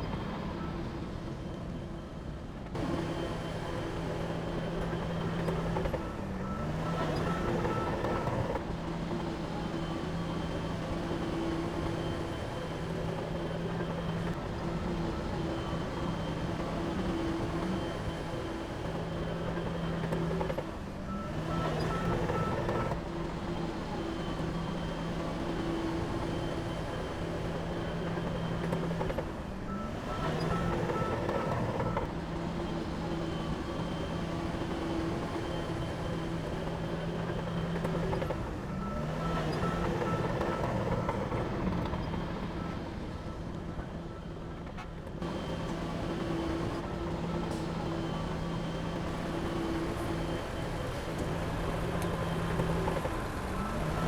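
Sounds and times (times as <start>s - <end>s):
diesel engine running: 2.8s - 54.0s.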